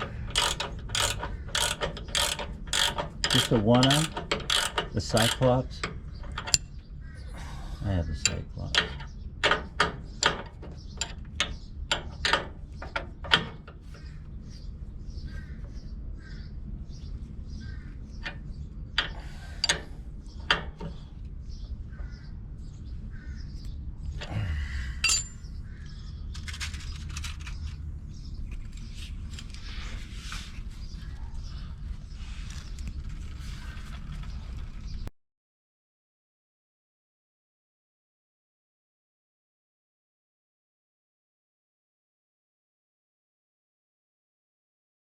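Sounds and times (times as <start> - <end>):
hand tools clicking on metal: 0.0 - 6.6, 8.2 - 13.8, 19.0 - 20.9, 25.0 - 25.4.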